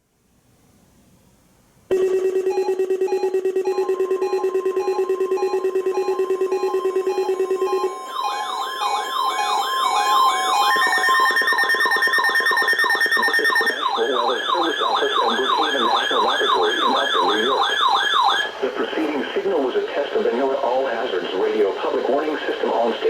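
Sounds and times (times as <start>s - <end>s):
electronic siren alarm: 1.9s - 18.6s
steady warning tone: 1.9s - 23.0s.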